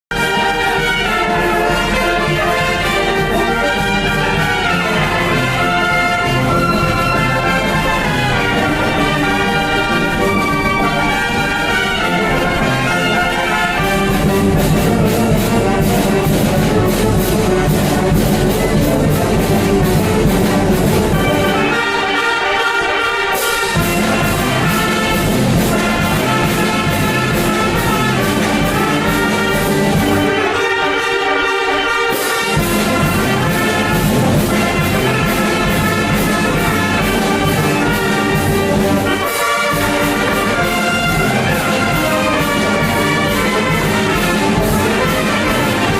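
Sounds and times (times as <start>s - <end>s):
brass band playing: 0.0s - 45.9s.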